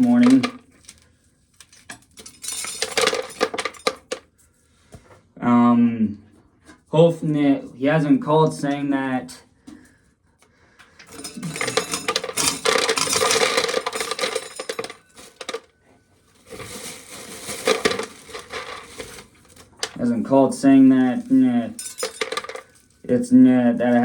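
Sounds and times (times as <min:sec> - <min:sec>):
dried corn rattling against metal: 0:00.0 - 0:01.0, 0:01.6 - 0:04.2, 0:11.1 - 0:15.7, 0:16.4 - 0:24.0.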